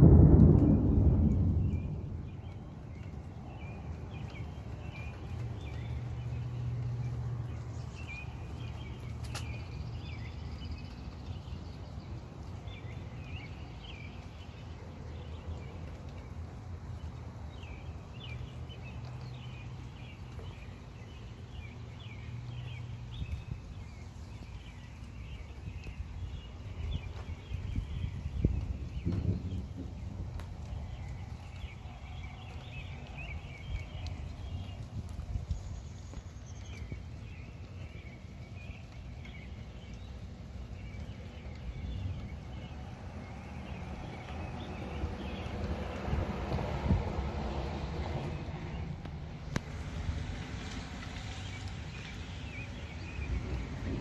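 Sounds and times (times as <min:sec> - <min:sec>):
distant thunder rumbling: 0:00.0 - 0:07.6, 0:22.5 - 0:35.9, 0:38.2 - 0:54.0.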